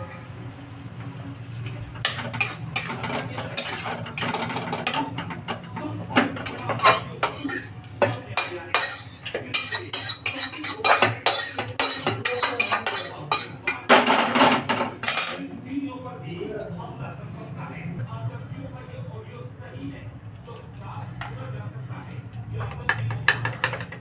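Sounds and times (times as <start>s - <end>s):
metal utensils clinking on pot: 1.3s - 16.7s, 20.3s - 24.0s.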